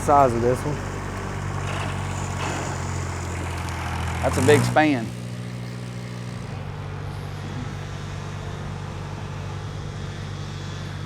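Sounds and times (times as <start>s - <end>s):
aerial lift engine humming: 0.0s - 11.0s.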